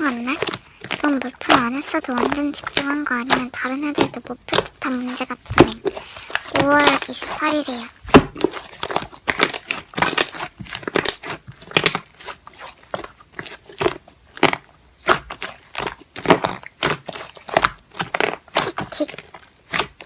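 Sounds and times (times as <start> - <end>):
slime crackling and popping: 0.0 - 20.0.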